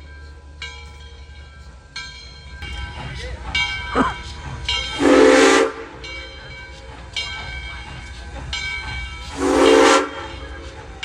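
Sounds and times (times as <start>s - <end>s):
steam hiss: 2.6s - 11.0s
steam whistle blasts: 5.0s - 6.1s, 9.3s - 10.4s.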